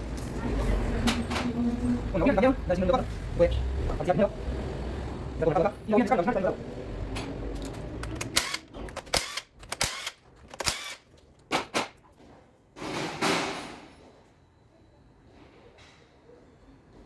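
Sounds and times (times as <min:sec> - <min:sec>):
metallic clicks of hand tools: 0:07.6 - 0:11.0.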